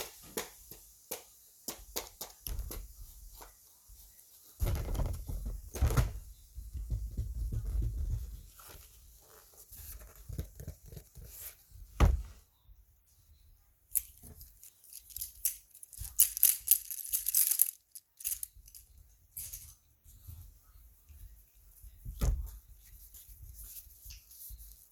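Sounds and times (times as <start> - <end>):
crisp rustling and crackling: 4.4 - 11.7, 14.0 - 18.8.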